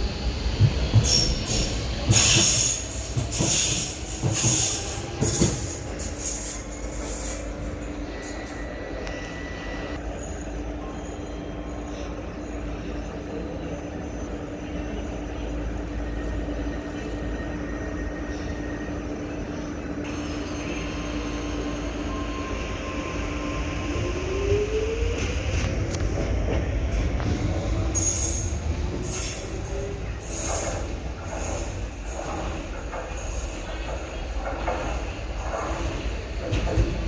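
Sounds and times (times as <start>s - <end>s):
train humming: 0.0s - 37.0s
train wheels squealing and clattering: 0.5s - 37.0s.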